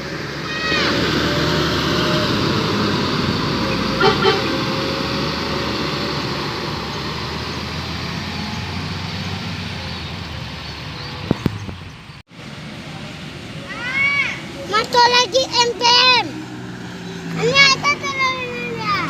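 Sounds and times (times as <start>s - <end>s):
bus engine running: 0.0s - 19.0s
bus horn toots: 3.6s - 5.0s.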